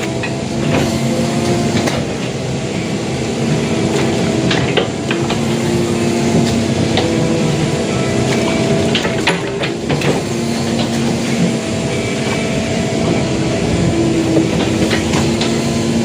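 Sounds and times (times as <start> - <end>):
diesel engine running under load: 0.0 - 16.0
metallic clanks of excavator bucket: 3.8 - 15.8.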